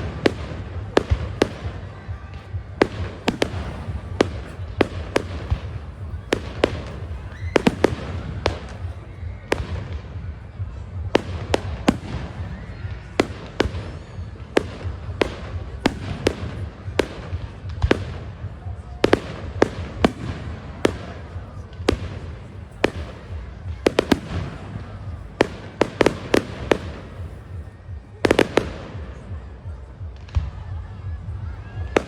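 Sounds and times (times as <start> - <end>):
fireworks bangs: 0.0 - 32.0.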